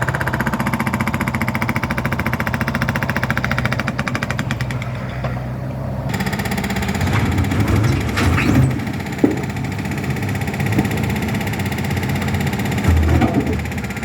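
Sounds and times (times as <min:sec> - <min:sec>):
jackhammer hammering: 0:00.0 - 0:04.9, 0:06.1 - 0:08.1, 0:08.8 - 0:14.0
heavy machinery engine running: 0:00.0 - 0:14.0
metallic clanks: 0:06.8 - 0:11.2, 0:12.2 - 0:14.0.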